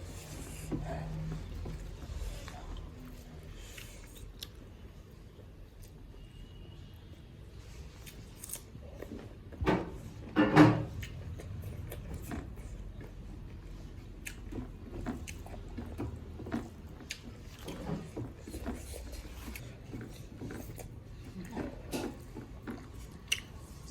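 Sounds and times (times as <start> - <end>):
wet chewing and lip-smacking: 0.1 - 4.8, 10.9 - 23.9.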